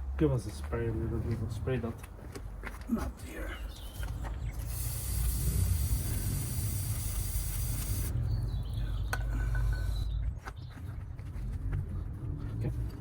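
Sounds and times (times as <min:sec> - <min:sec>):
aerosol spray can hissing: 0:04.6 - 0:08.1.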